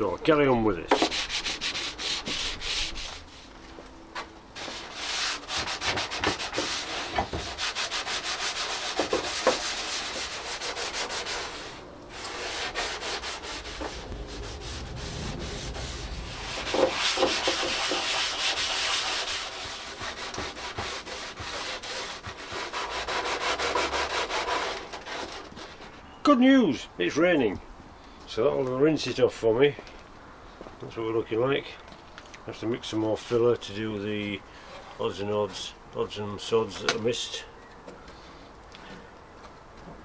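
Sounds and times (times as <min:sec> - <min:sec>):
sandpaper rubbing car bumper: 0:01.0 - 0:03.7, 0:04.6 - 0:14.0, 0:15.5 - 0:25.8.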